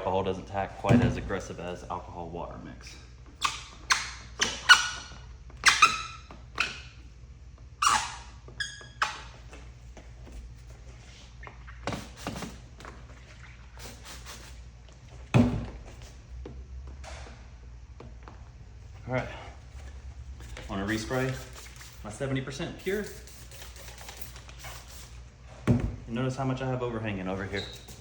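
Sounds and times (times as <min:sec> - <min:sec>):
wet film squeaking and rubbing: 0:03.3 - 0:07.0, 0:07.8 - 0:09.6, 0:11.0 - 0:14.6, 0:27.4 - 0:28.0.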